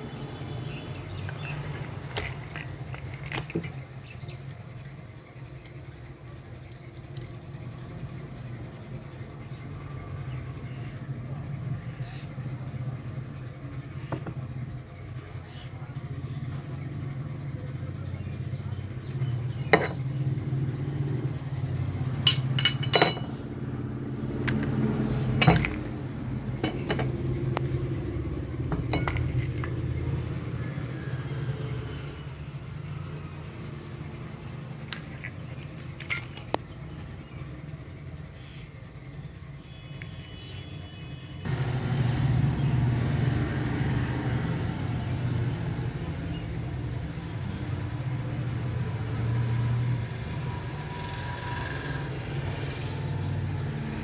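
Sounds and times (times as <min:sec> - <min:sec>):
metal clinks and knocks: 0:19.3 - 0:20.1, 0:22.2 - 0:23.5, 0:24.4 - 0:27.7, 0:28.7 - 0:29.8, 0:34.8 - 0:36.6.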